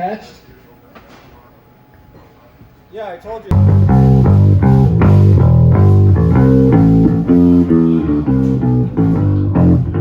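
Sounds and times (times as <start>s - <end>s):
electric bass guitar playing: 3.5s - 10.0s.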